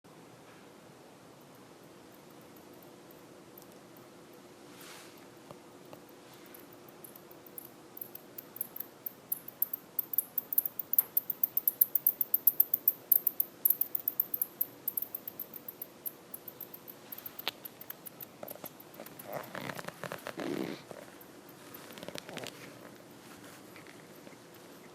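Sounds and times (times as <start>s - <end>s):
bat echolocation ticks: 1.4s - 4.5s, 5.8s - 19.5s, 21.1s - 22.5s.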